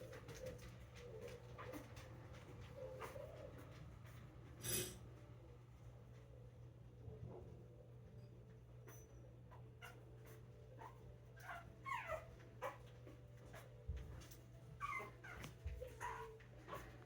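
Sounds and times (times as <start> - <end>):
puppies whimpering: 8.9 - 17.0.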